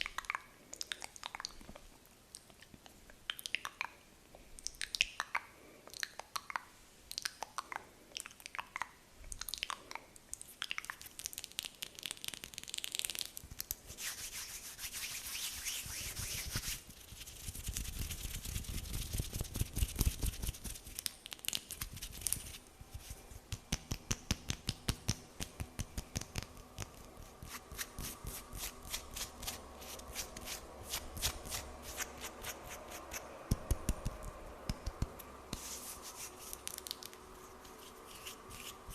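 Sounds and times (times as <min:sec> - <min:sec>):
scratchy rubbing on hands: 0:13.9 - 0:21.0, 0:26.9 - 0:34.2, 0:35.0 - 0:38.9.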